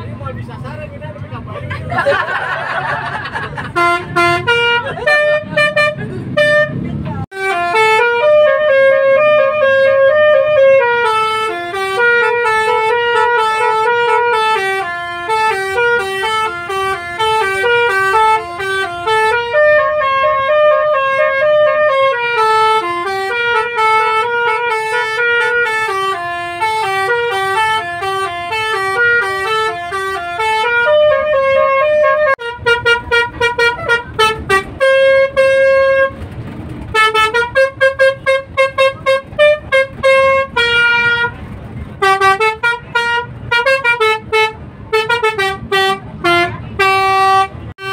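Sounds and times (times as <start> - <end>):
musical air horn melody: 3.8 - 36.2, 36.9 - 41.4, 42.0 - 47.9.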